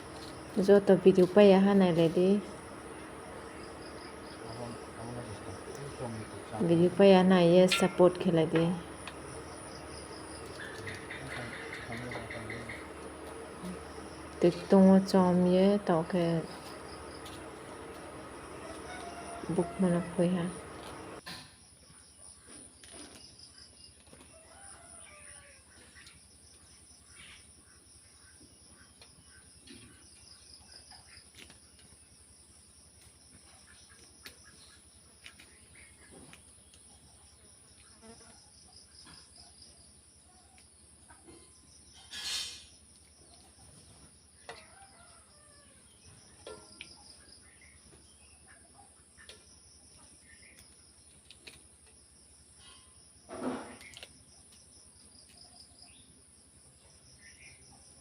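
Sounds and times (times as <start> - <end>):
insects trilling: 0.0 - 58.0
distant rooster crowing: 7.7 - 8.4, 17.5 - 21.2, 24.3 - 25.7, 44.5 - 45.9.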